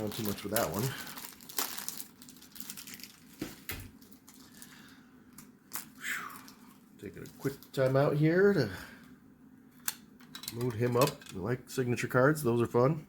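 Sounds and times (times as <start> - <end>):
trading cards rustling: 0.0 - 8.1.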